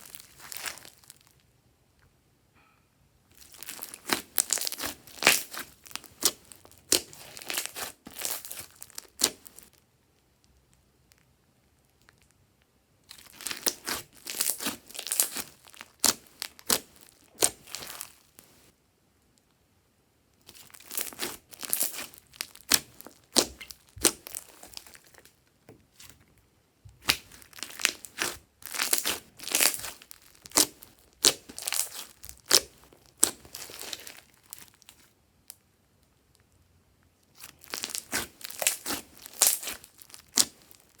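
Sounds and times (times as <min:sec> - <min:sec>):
slime squishing and crackling: 0:00.0 - 0:01.4, 0:03.3 - 0:09.8, 0:13.1 - 0:18.7, 0:20.4 - 0:26.2, 0:26.9 - 0:35.1, 0:37.3 - 0:41.0.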